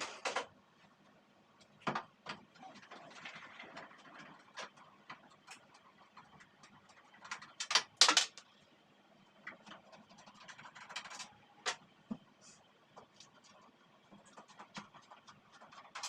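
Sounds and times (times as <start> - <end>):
hard objects clicking and scraping: 6.2 - 8.4.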